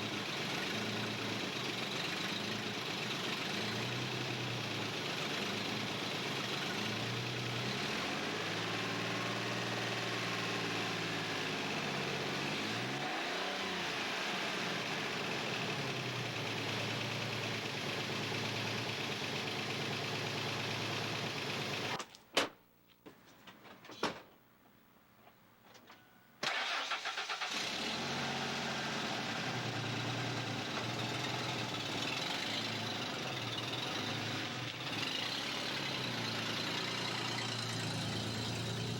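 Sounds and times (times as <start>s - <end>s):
engine cranking: 26.4s - 27.8s
car engine idling: 26.5s - 38.9s.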